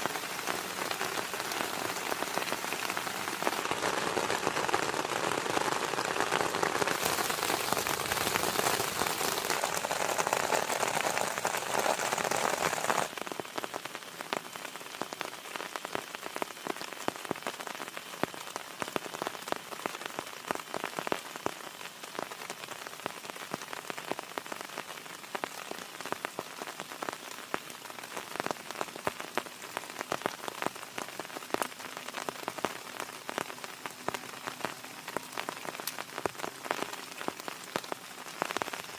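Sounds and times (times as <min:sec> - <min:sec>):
heavy rain hissing: 0:00.0 - 0:16.9
pattering raindrops: 0:00.0 - 0:38.9.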